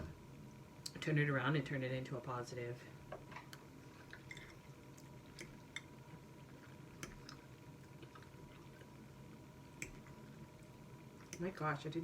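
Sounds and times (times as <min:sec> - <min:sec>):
soft wet chewing clicks: 0:06.6 - 0:09.0, 0:09.7 - 0:10.2, 0:11.1 - 0:11.5.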